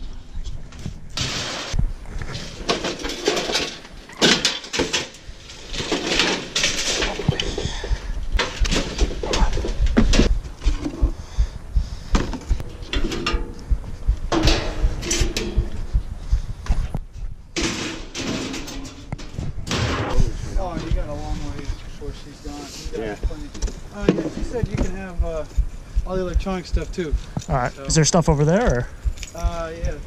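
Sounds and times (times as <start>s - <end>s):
scrap metal knocking and clattering: 2.4s - 11.0s, 12.2s - 13.7s, 14.3s - 15.8s, 17.6s - 21.6s.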